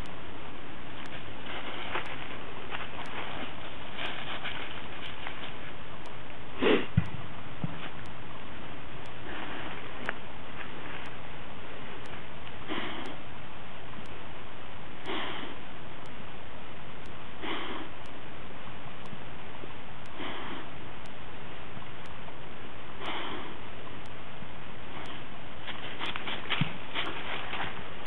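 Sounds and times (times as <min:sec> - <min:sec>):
steady hiss: 0:00.0 - 0:28.0
dog breathing heavily: 0:01.1 - 0:05.6
dog sniffing hard: 0:06.6 - 0:06.9.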